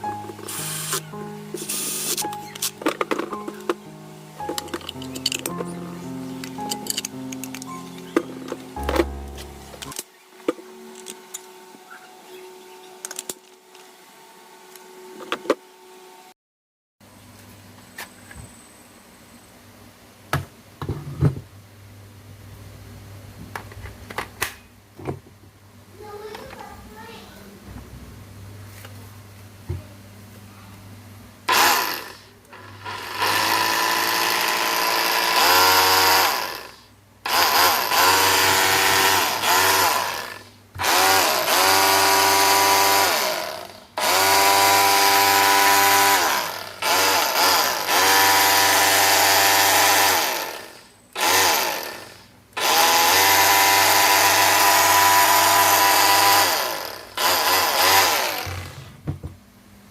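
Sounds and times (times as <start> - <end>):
power tool motor whine: 0.4 - 3.8, 31.5 - 58.8.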